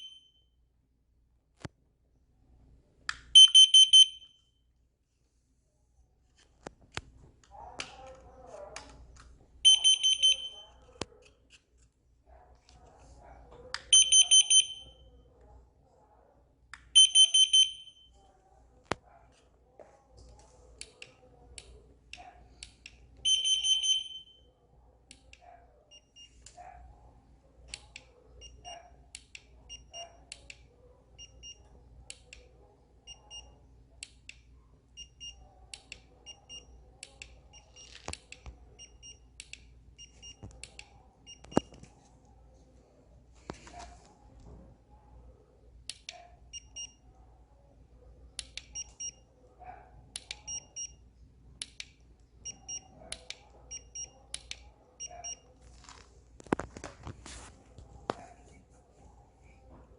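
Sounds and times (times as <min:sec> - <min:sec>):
electronic alarm beeping: 0:00.0 - 0:00.4, 0:03.4 - 0:04.4, 0:09.6 - 0:10.7, 0:13.9 - 0:15.0, 0:17.0 - 0:18.1, 0:23.2 - 0:24.4, 0:50.4 - 0:51.0, 0:52.4 - 0:52.9.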